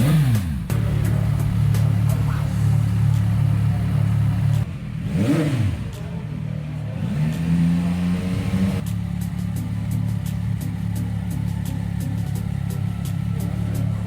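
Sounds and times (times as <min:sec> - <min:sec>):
motorcycle engine idling and revving: 0:00.0 - 0:14.0.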